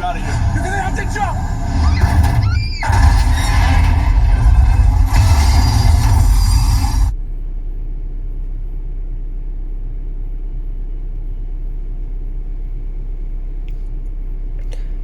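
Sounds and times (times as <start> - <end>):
car cabin rumble: 0.0 - 7.5.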